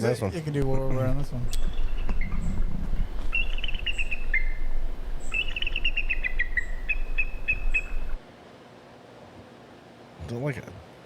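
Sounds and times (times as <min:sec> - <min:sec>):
eagle high chittering calls: 0:00.6 - 0:08.2.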